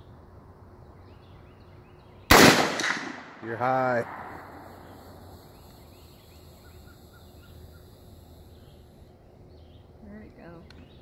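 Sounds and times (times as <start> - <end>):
steady low hum: 0.0 - 11.0
faint bird calls: 4.6 - 11.0
small bird chirping: 4.6 - 11.0.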